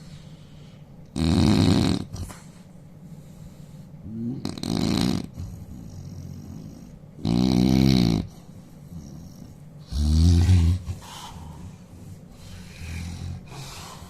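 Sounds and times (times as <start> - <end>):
man snoring loudly: 1.2 - 2.1, 4.1 - 8.3, 9.0 - 10.8.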